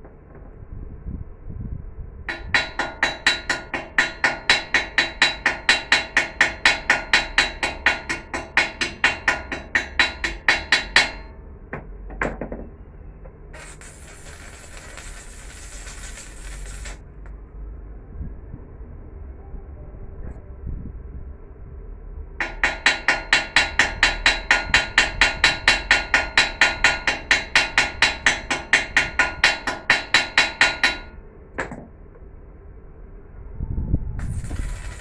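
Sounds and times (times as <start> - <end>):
hammer striking steel: 2.3 - 11.3, 13.6 - 17.0
steady hiss: 13.6 - 17.0.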